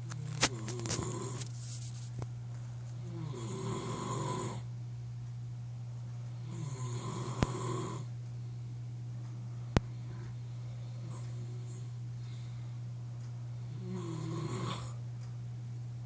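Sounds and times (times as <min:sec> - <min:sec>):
man snoring loudly: 0:00.5 - 0:01.4, 0:03.0 - 0:04.7, 0:06.4 - 0:08.1, 0:13.7 - 0:15.0.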